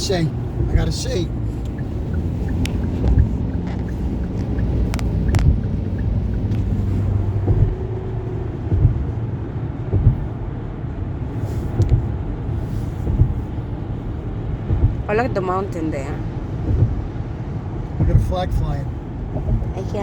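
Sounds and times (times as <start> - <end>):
dull bumps: 0.0 - 10.5, 12.9 - 13.8, 14.4 - 20.0
car cabin road rumble: 0.0 - 20.0
sharp clicks: 1.6 - 7.8.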